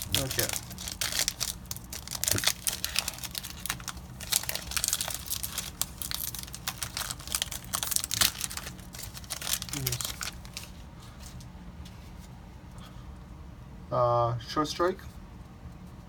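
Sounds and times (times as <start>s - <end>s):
foil wrapper crinkling and tearing: 0.0s - 11.4s.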